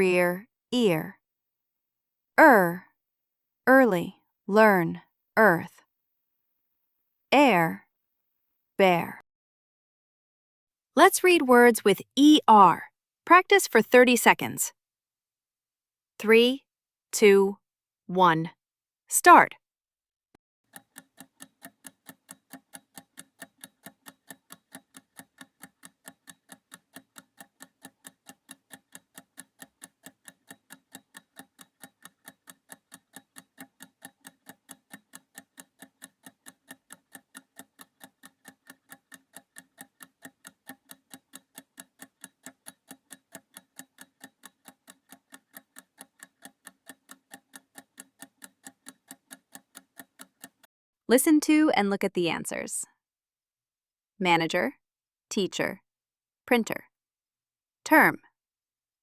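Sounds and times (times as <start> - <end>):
countdown timer ticking: 20.7 - 51.7.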